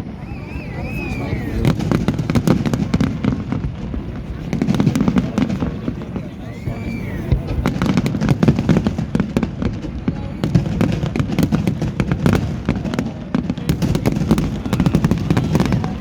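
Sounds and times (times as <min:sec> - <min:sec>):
crowd murmur: 0:00.0 - 0:16.0
fireworks bangs and crackles: 0:00.0 - 0:16.0.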